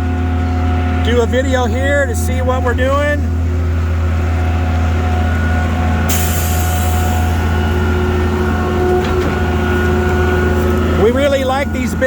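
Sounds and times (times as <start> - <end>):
diesel engine running: 0.0 - 12.0
air hiss: 6.1 - 7.8.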